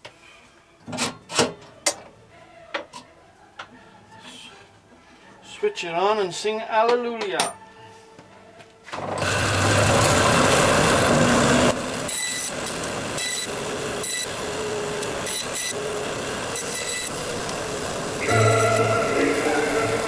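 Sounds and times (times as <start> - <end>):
bandsaw running: 9.2 - 20.0.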